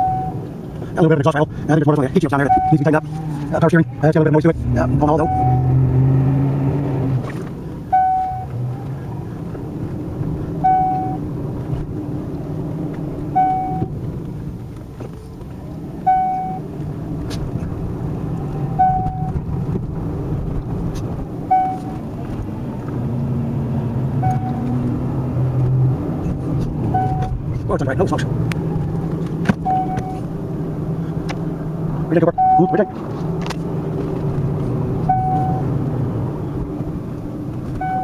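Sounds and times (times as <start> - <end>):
short electronic beep: 0.0 - 0.4, 5.2 - 5.7, 7.9 - 8.5, 13.4 - 13.8, 16.1 - 16.6, 18.8 - 19.3, 21.5 - 21.9, 24.2 - 24.6
car engine idling: 0.0 - 38.0.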